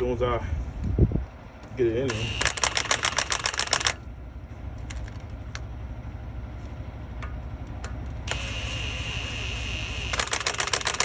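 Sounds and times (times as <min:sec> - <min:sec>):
steady low rumble: 0:00.0 - 0:02.4
impact gun whining: 0:02.1 - 0:04.0, 0:08.3 - 0:11.0.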